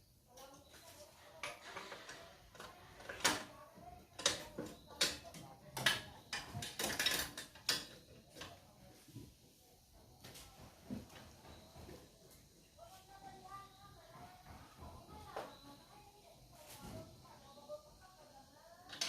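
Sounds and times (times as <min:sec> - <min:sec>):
tools and engine parts clicking: 0:04.1 - 0:08.6.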